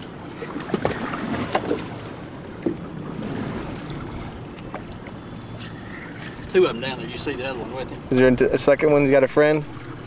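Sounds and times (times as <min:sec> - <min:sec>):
water noise: 0:00.0 - 0:10.0
wind: 0:00.0 - 0:10.0.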